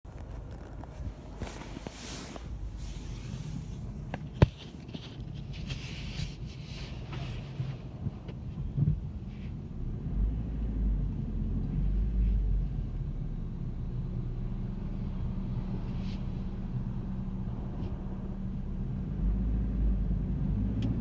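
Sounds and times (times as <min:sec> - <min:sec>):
heavier low rumble: 0:00.1 - 0:04.8
car engine hum: 0:00.1 - 0:21.0.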